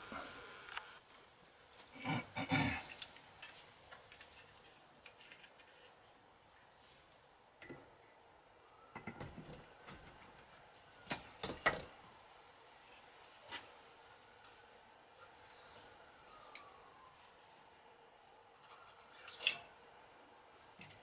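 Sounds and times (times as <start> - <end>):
metal parts clinking: 18.6 - 19.7.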